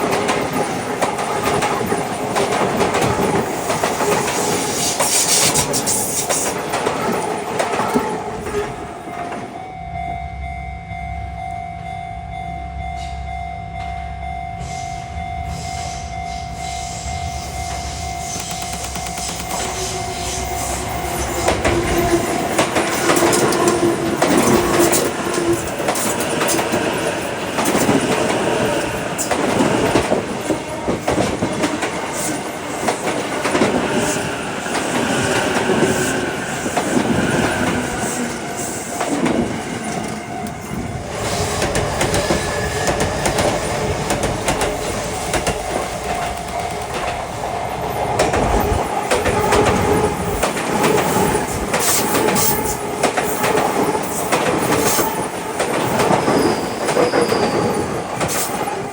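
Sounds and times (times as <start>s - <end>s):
electric train passing: 0.0s - 58.9s
wheels clattering over rail joints: 20.8s - 40.5s.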